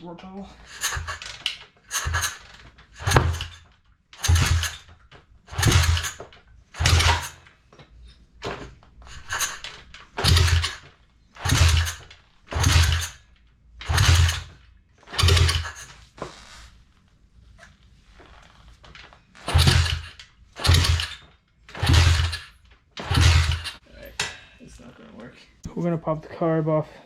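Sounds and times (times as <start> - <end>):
motorbike engine being kick-started: 0.6 - 7.5, 8.4 - 16.0, 18.9 - 23.8.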